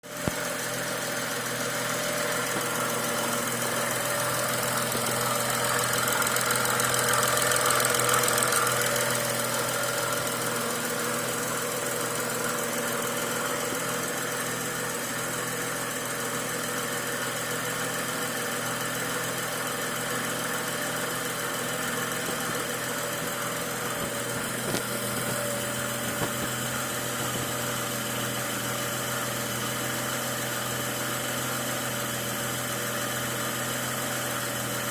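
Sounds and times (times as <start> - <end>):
car engine idling: 0.1 - 34.8.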